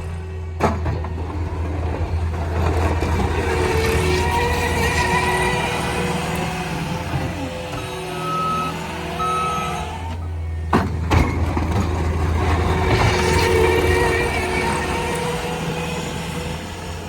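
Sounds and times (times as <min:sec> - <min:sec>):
diesel engine running: 0:00.0 - 0:17.0
backup alarm beeps: 0:08.2 - 0:09.9.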